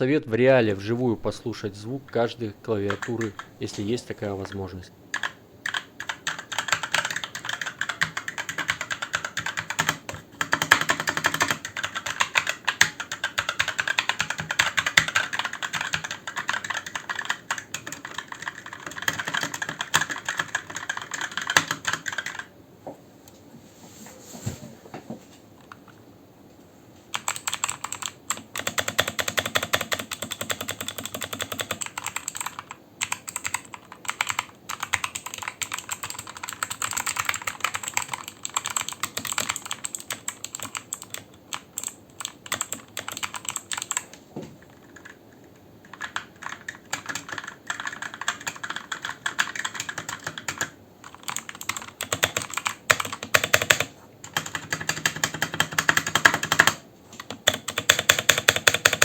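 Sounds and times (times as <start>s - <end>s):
mechanical keyboard typing: 2.8s - 22.5s, 27.1s - 59.0s.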